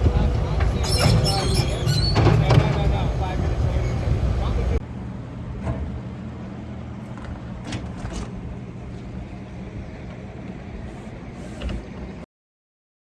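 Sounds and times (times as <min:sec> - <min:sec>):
motor humming: 0:07.0 - 0:12.2.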